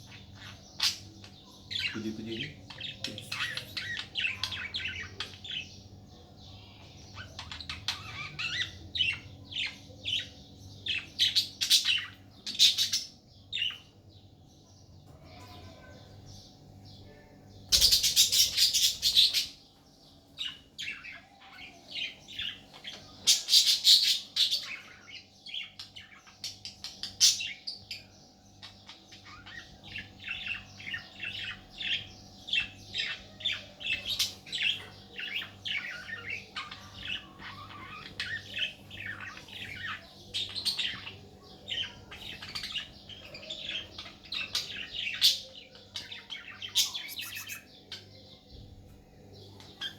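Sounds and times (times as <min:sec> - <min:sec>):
budgerigar chirps and warbles: 0:00.0 - 0:05.8, 0:06.5 - 0:13.9, 0:17.7 - 0:19.6, 0:20.4 - 0:48.4.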